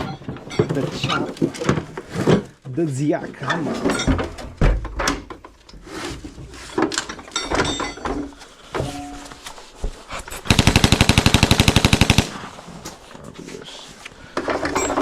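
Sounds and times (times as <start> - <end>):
tool knocks and clatter: 0.0 - 2.6, 3.5 - 10.0, 14.4 - 15.0.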